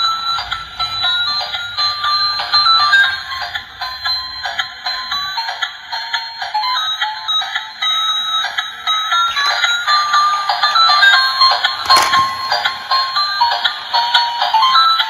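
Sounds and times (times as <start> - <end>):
toy beeping melody: 0.0 - 11.7.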